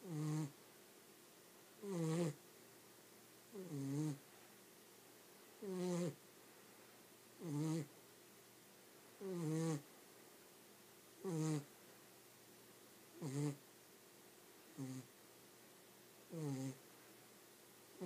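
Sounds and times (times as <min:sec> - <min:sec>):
dog snoring: 0:00.0 - 0:00.6, 0:01.8 - 0:02.4, 0:03.5 - 0:04.2, 0:05.6 - 0:06.2, 0:07.4 - 0:07.9, 0:09.2 - 0:09.9, 0:11.2 - 0:11.7, 0:13.2 - 0:13.6, 0:14.7 - 0:15.1, 0:16.3 - 0:16.8.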